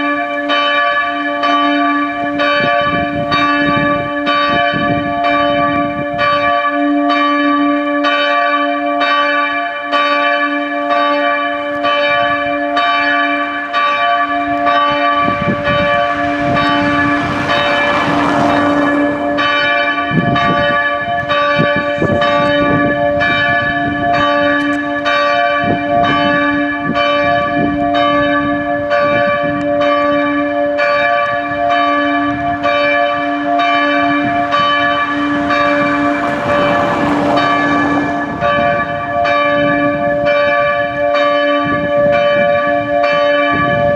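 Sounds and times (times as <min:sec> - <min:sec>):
church bells ringing: 0:00.0 - 0:43.9
rushing noise: 0:14.2 - 0:25.0, 0:31.4 - 0:40.3.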